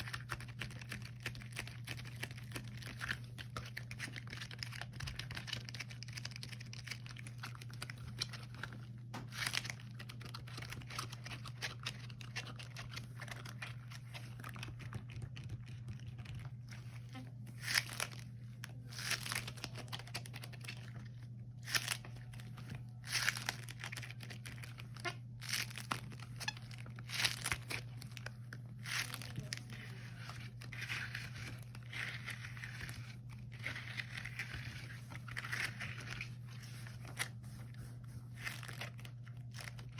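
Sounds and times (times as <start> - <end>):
rubber gloves crinkling and rubbing: 0.0 - 39.9.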